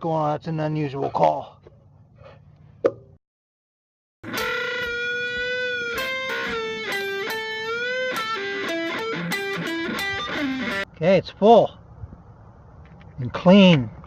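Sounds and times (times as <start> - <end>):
electric guitar melody: 4.2 - 10.8.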